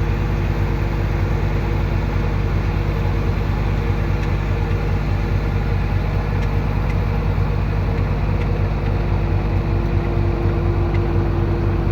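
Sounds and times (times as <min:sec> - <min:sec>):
heavy diesel engine running: 0:00.0 - 0:11.9.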